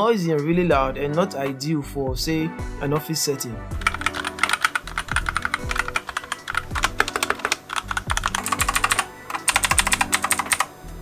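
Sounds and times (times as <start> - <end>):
background music with steady beat: 0.0 - 11.0
fast typing on mechanical keyboard: 3.8 - 11.0.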